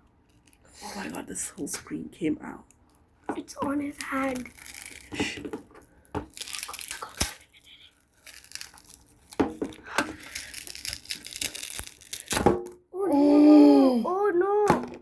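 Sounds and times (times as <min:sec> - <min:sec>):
glass screen crackling and crunching: 0:00.2 - 0:01.8, 0:02.8 - 0:12.9
glass snapping: 0:06.2 - 0:07.5, 0:08.2 - 0:12.8.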